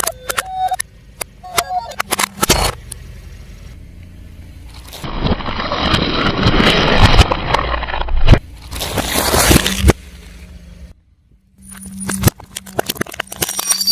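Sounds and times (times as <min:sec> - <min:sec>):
tyre crushing crunchy objects: 0:04.7 - 0:10.0.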